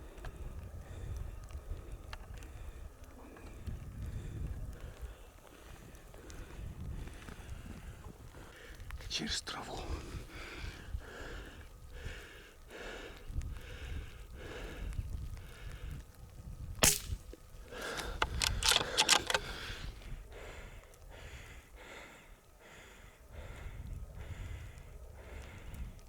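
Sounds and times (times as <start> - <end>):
wind buffeting microphone: 0.0 - 9.0, 9.9 - 22.0, 22.7 - 26.0
heavy panting breaths: 9.8 - 16.0, 17.6 - 26.0
rifle shot crack: 16.8 - 19.8.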